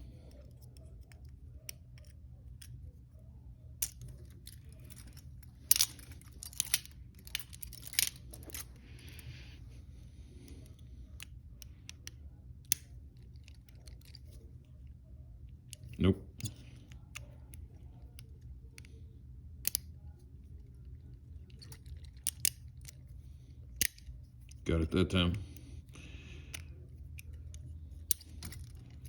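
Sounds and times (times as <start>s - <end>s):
low steady hum: 0.0s - 29.0s
lock pick metallic clicks: 3.8s - 8.7s, 19.6s - 19.9s, 21.5s - 23.0s, 23.8s - 24.1s, 27.2s - 29.0s.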